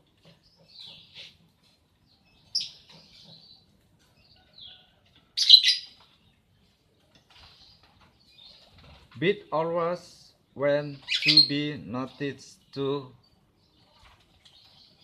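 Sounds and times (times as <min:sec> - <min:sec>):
lovebird chirping: 0:02.0 - 0:06.3, 0:10.8 - 0:15.0.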